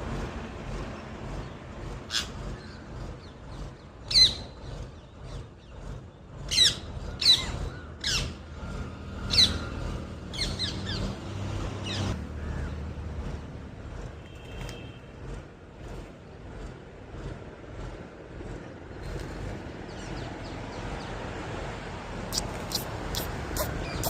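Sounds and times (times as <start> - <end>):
parrot squawking: 22.3 - 24.0.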